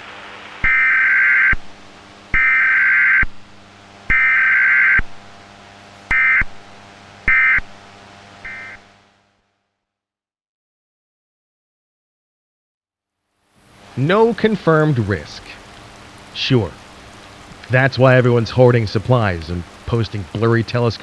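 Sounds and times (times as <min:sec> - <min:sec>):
buzzy two-tone data bursts: 0:00.0 - 0:09.0, 0:13.6 - 0:21.0.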